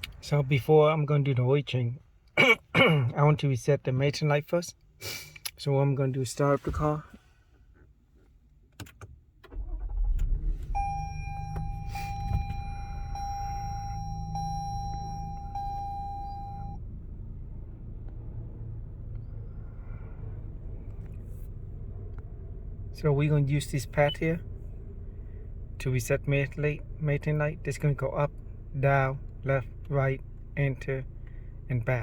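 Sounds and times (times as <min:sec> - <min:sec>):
car engine starting and idling: 0:05.8 - 0:32.0
dashboard chime: 0:10.8 - 0:16.8.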